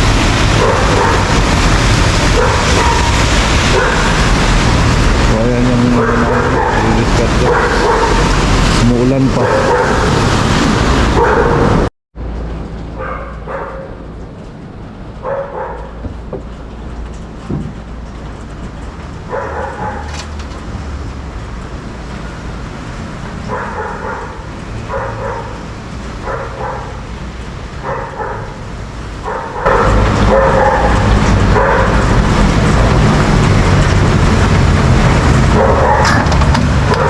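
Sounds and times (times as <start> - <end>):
steady low rumble: 0.0 - 20.0
dog barking: 0.6 - 1.4, 2.3 - 4.2, 5.9 - 8.3, 9.4 - 10.2, 11.2 - 11.8, 13.0 - 14.0, 15.2 - 16.0, 19.3 - 20.1, 23.5 - 25.6, 26.2 - 27.0, 27.8 - 28.6, 29.2 - 32.1, 35.5 - 36.2.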